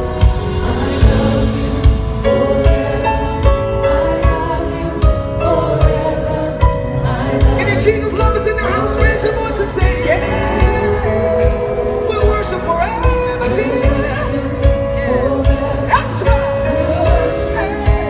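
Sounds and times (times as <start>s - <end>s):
slow drum beat: 0.0s - 6.8s
gospel band playing: 0.0s - 18.0s.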